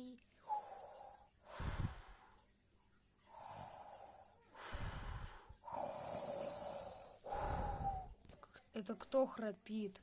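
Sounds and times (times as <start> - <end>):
person snoring: 3.3 - 8.1.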